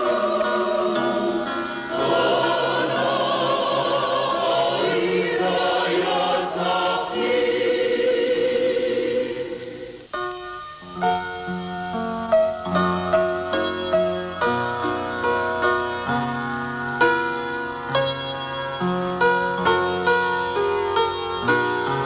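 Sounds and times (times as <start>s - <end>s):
choir singing held notes: 0.0s - 10.9s.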